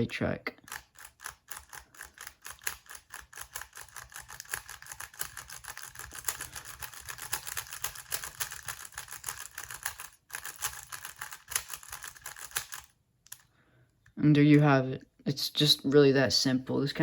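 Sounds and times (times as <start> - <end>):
puzzle cube layers clicking: 0.6 - 13.4.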